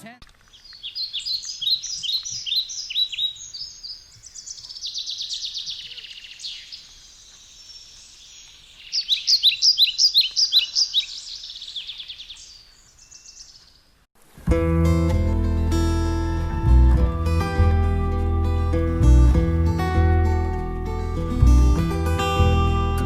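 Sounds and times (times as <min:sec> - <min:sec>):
songbirds singing and calling: 0:00.2 - 0:14.0.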